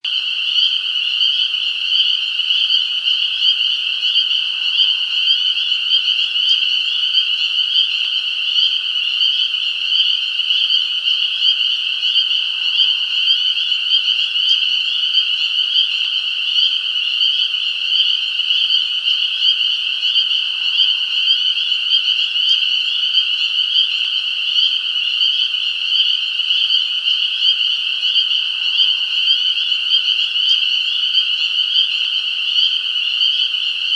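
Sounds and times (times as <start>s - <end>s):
frogs calling in chorus: 0.0s - 33.9s.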